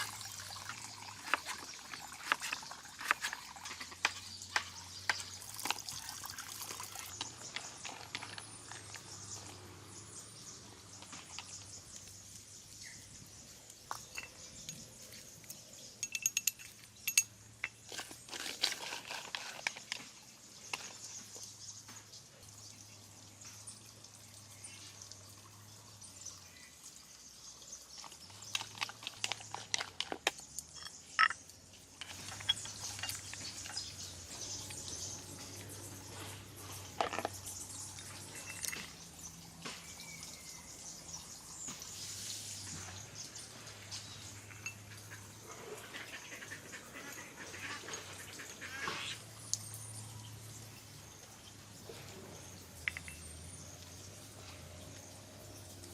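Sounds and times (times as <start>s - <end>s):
small clicks and knocks: 28.0s - 34.8s, 52.8s - 54.6s.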